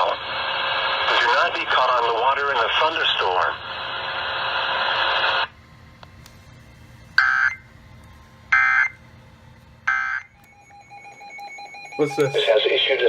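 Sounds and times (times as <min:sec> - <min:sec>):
loud radio hiss: 0:00.0 - 0:05.5, 0:12.3 - 0:13.0.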